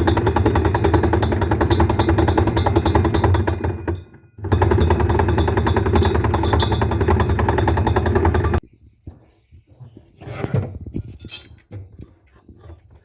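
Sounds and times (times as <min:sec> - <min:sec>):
washing machine clattering: 0:00.0 - 0:08.6
washing machine motor hum: 0:00.0 - 0:08.6.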